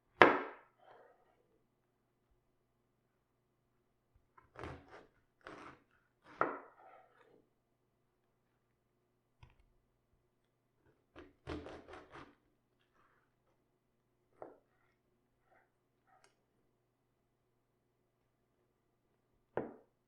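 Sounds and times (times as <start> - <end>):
cabbage being cut: 4.5 - 6.6, 11.4 - 12.4.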